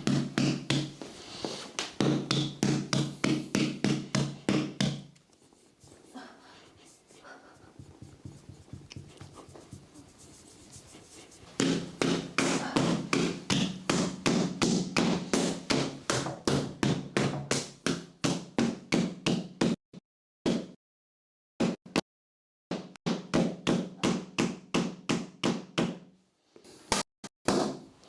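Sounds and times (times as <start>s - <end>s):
percussive blows on a body: 0.0s - 1.0s, 1.8s - 5.1s, 7.8s - 10.0s, 11.6s - 19.8s
faint tapping and rubbing: 0.1s - 16.3s.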